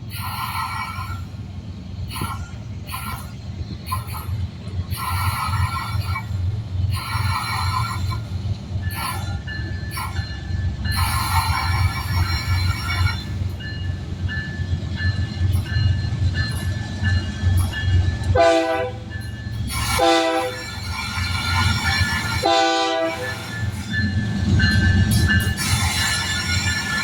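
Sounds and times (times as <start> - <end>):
freight train rumble: 0.0 - 27.0
locomotive air horn blasts: 18.3 - 19.1, 19.8 - 20.7, 22.3 - 23.5.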